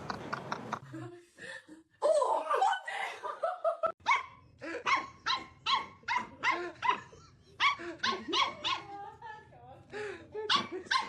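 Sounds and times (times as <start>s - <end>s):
dog barking rapidly: 4.0s - 8.9s, 10.5s - 11.0s.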